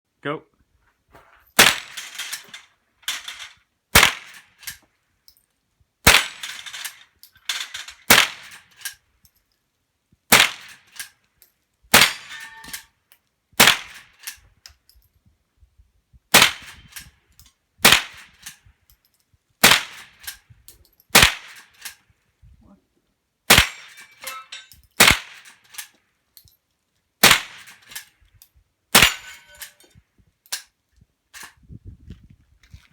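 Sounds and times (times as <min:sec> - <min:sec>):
rifle shots: 0:01.6 - 0:02.1, 0:04.0 - 0:04.4, 0:06.1 - 0:06.6, 0:08.1 - 0:08.5, 0:10.3 - 0:10.8, 0:11.9 - 0:12.3, 0:13.6 - 0:14.0, 0:16.4 - 0:16.7, 0:17.8 - 0:18.2, 0:19.6 - 0:20.2, 0:21.1 - 0:21.6, 0:23.5 - 0:24.0, 0:25.0 - 0:25.5, 0:27.2 - 0:27.7, 0:29.0 - 0:29.6.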